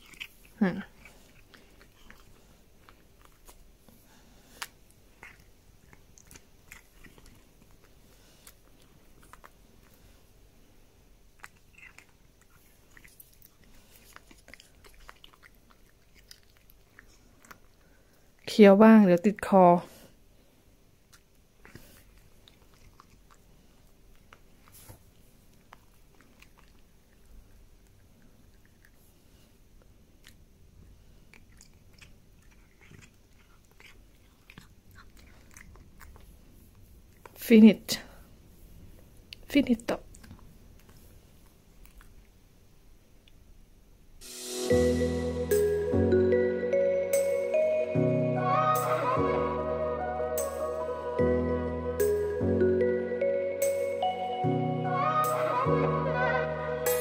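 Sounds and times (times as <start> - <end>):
cat chewing crunchy treat: 0.0 - 18.5, 19.9 - 37.4, 38.2 - 42.4.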